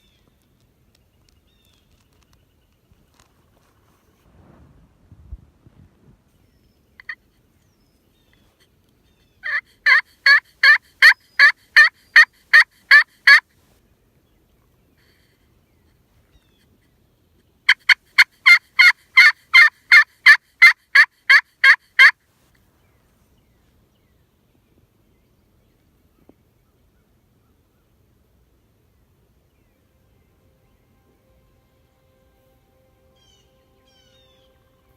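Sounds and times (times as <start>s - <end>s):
turkey call yelps: 9.4s - 13.4s, 17.7s - 22.1s.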